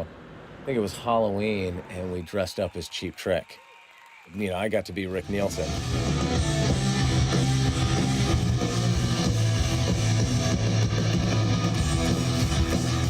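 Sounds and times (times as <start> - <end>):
bass guitar: 5.2 - 13.0
electric guitar chords: 5.3 - 13.0.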